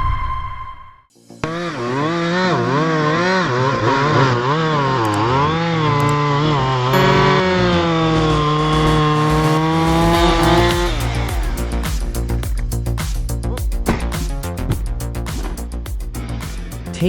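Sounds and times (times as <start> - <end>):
chainsaw engine revving: 1.9 - 11.7.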